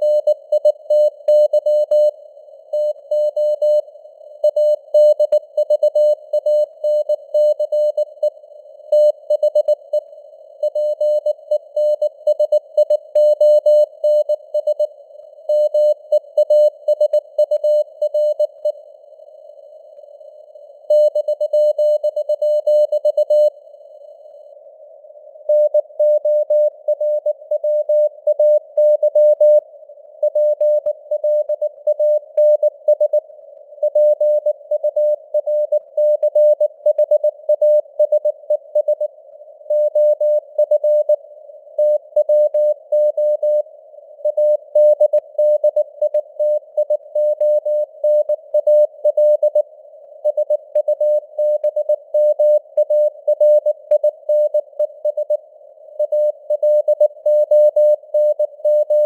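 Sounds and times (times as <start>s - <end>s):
morse code beeps: 56.0s - 59.0s.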